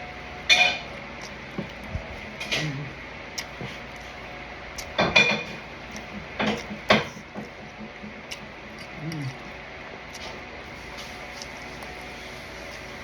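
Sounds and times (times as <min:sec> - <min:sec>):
tableware clinking and scraping: 0:05.0 - 0:05.6.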